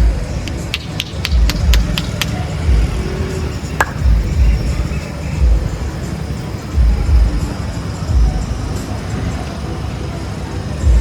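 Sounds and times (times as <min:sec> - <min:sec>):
hands tapping on scalp: 0:00.4 - 0:02.4.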